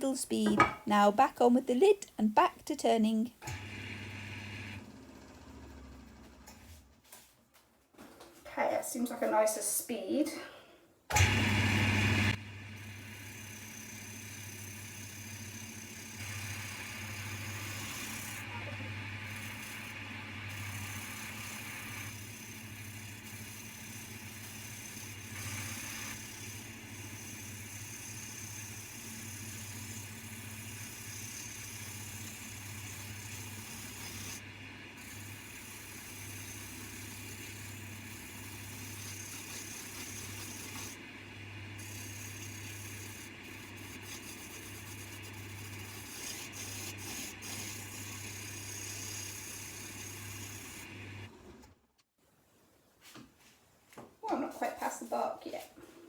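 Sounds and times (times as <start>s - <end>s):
lathe motor hum: 3.4s - 6.5s, 11.1s - 51.6s
turning tool scraping wood: 12.8s - 34.4s, 35.0s - 41.0s, 41.8s - 51.0s.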